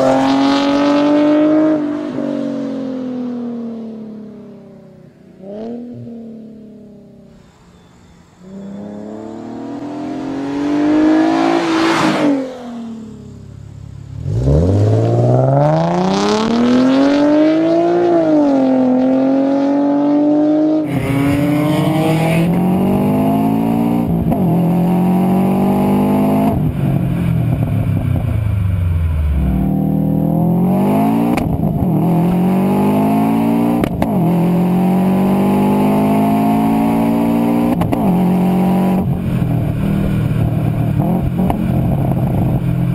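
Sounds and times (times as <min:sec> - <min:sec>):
car engine revving: 0:00.0 - 0:04.4, 0:08.4 - 0:42.9
turbocharged car accelerating: 0:00.0 - 0:07.2, 0:08.4 - 0:42.9.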